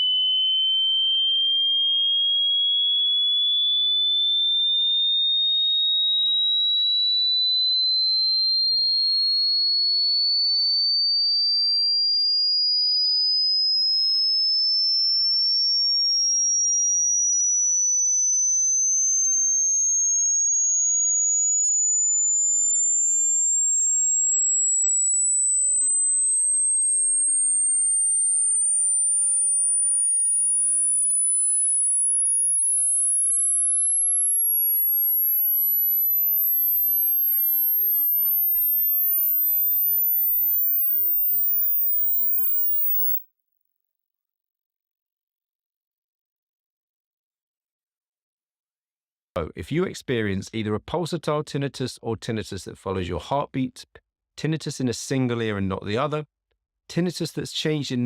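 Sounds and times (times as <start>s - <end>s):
sine test tone sweeping upward: 0.0s - 43.2s.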